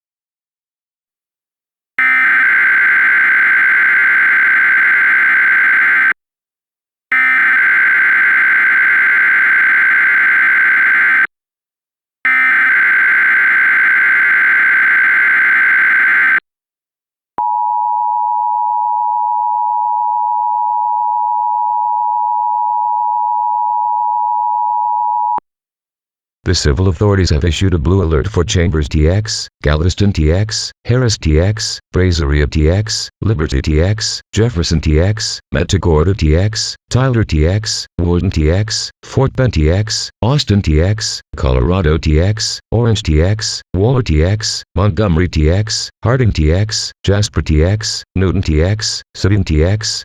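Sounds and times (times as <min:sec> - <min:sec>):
harsh digital data screech: 0:02.0 - 0:06.1.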